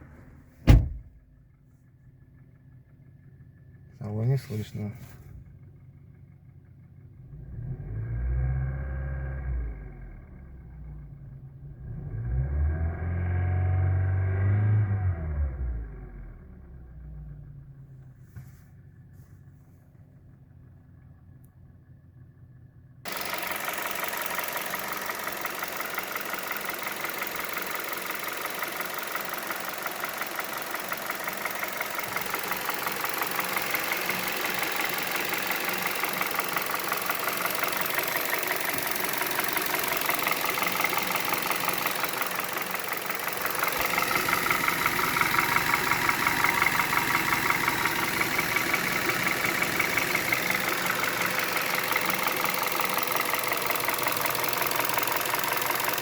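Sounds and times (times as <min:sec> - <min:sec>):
car engine idling with rapid knock: 0:00.5 - 0:07.2, 0:18.0 - 0:56.0.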